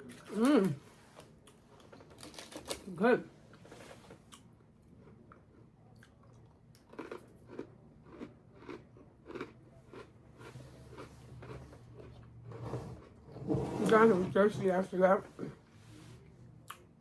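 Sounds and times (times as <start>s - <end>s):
person chewing crunchy cookies: 4.2s - 13.2s.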